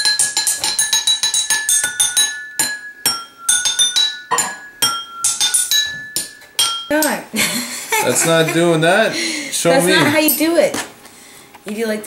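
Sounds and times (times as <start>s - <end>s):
spoons clinking together: 0.0s - 7.2s.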